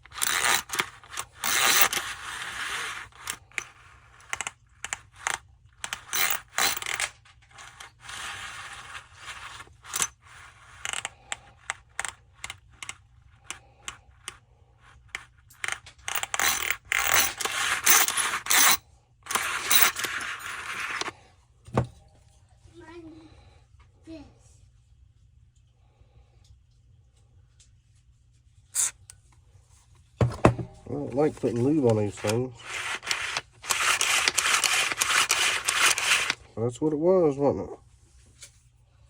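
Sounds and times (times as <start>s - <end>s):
metal scraping: 0.0s - 11.4s, 15.1s - 21.1s, 30.2s - 36.4s
small metal pieces clicking: 0.0s - 14.4s, 15.1s - 21.1s, 32.2s - 36.4s.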